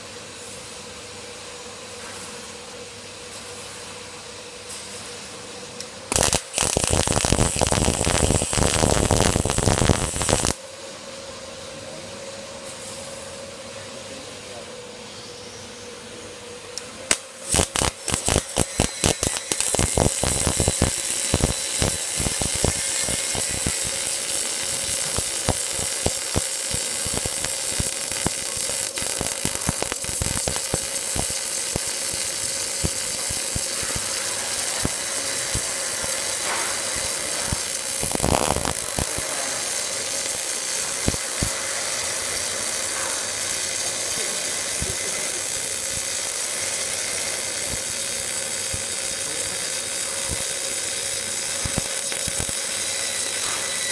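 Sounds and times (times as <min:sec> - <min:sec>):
welding arc crackling sizzle: 0:00.0 - 0:11.5, 0:15.9 - 0:53.9
machine hum: 0:05.2 - 0:53.9
welding arc sharp pops: 0:05.8 - 0:10.6, 0:16.7 - 0:53.9.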